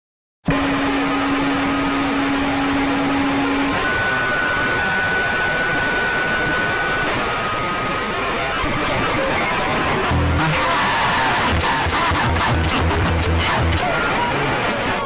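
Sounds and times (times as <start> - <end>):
steady electronic alarm tones: 1.0 - 13.2.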